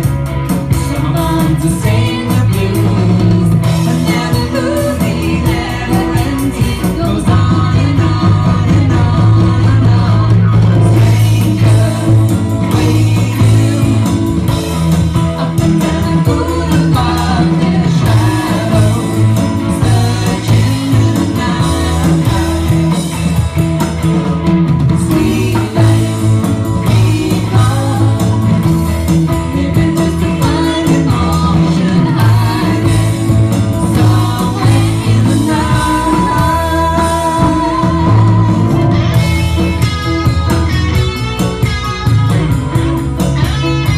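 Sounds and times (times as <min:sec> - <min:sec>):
rock music with singing: 0:00.0 - 0:43.9.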